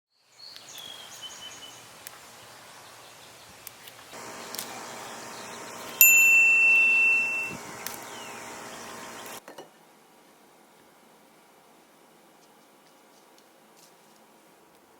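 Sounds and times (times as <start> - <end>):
faint hum: 4.2 - 9.4
high bell-like chime: 6.0 - 7.6.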